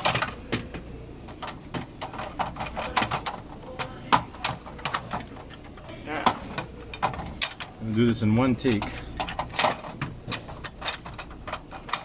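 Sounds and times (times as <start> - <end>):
plastic tray clicking and knocking: 0.0 - 5.6, 8.7 - 12.0.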